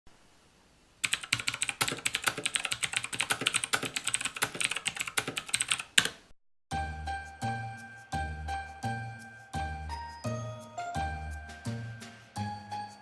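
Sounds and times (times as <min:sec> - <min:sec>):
clicky mechanical keyboard typing: 0:01.0 - 0:06.2
music jingle: 0:06.7 - 0:13.0.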